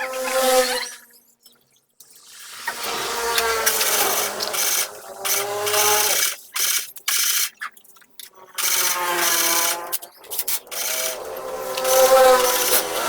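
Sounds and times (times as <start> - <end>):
electric power tool whining: 2.7 - 6.7, 8.6 - 13.0.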